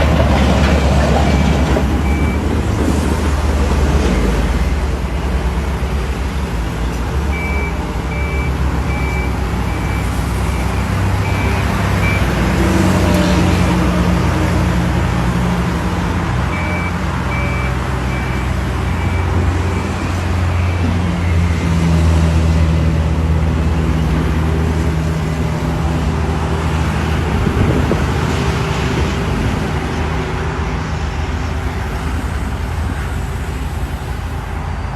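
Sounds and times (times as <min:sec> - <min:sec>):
heavy diesel machinery running: 0:00.0 - 0:34.9
reversing alarm beeping: 0:00.6 - 0:02.5, 0:07.2 - 0:12.3, 0:16.5 - 0:21.7.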